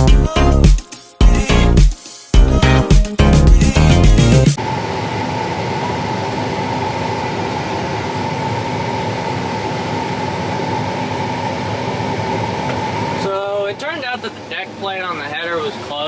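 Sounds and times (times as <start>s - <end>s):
combine harvester drone: 4.5s - 16.0s.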